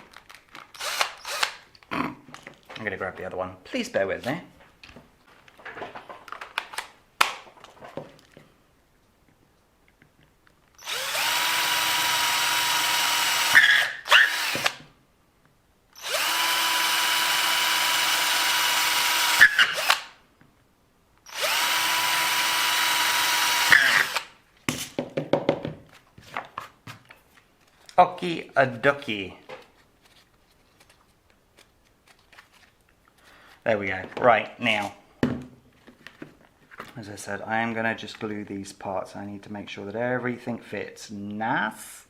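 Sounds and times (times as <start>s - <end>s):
power drill whining: 0.7s - 1.6s, 10.8s - 14.9s, 16.0s - 20.2s, 21.3s - 24.4s.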